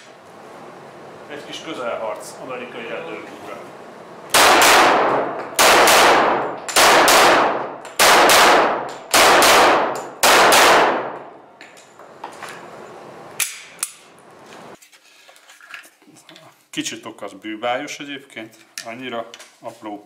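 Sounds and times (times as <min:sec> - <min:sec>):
pistol shots echoing: 0:04.3 - 0:11.4.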